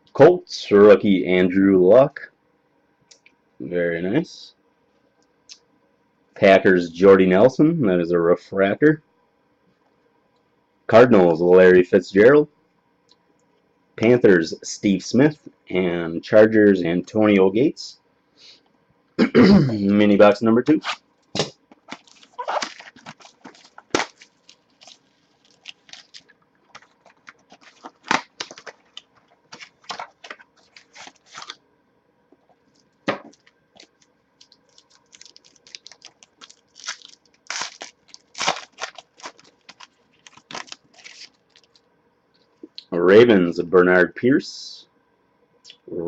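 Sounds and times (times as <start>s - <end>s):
wrappers crinkling and tearing: 20.8s - 31.6s, 32.7s - 41.9s.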